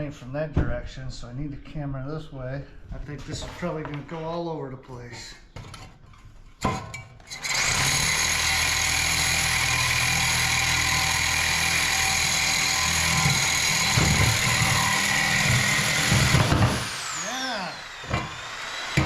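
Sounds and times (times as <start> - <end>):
reciprocating saw cutting metal: 7.2 - 19.0
saw jolting loudly: 7.3 - 19.0.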